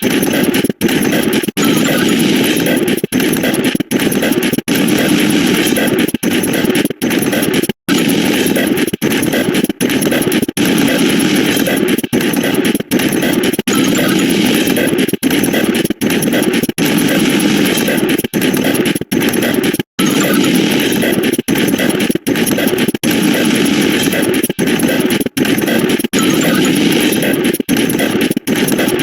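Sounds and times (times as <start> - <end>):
harsh synthetic buzzing sound effects: 0.0 - 29.0.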